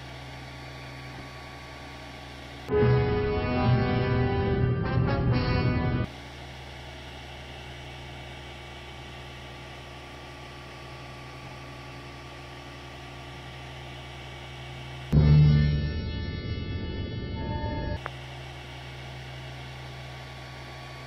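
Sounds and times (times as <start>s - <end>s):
three-d printer humming: 0.0s - 3.1s, 18.0s - 21.0s
background music: 2.7s - 6.1s, 15.2s - 18.0s.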